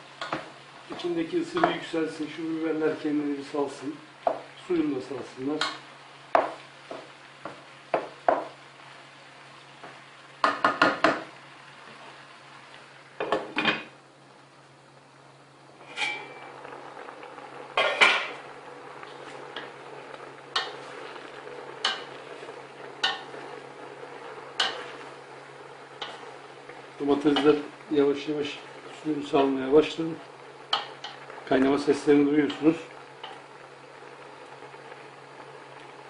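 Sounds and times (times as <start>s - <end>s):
faint simmer: 0.0s - 36.0s
metal pots and lids clattering: 15.8s - 16.5s, 17.8s - 18.4s.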